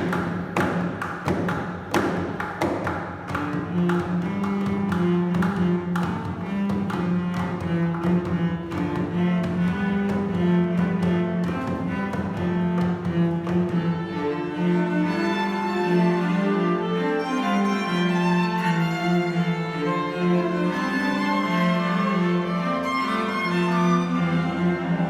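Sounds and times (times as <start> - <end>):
sharp percussive taps: 0.0 - 14.2
violins and cellos playing: 3.2 - 25.0.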